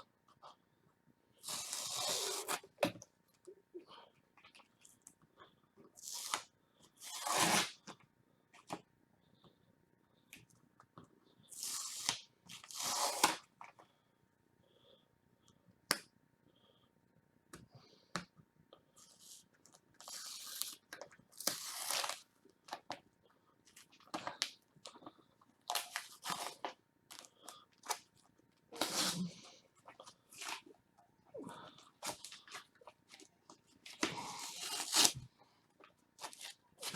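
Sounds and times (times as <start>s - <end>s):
packaging tearing and crinkling: 34.1s - 35.2s.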